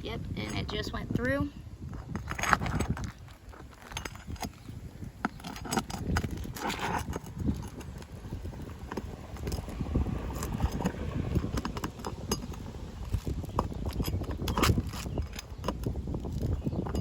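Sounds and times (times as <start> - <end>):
low rumble: 5.9 - 15.4
metal tool clicking and scraping: 8.9 - 17.0.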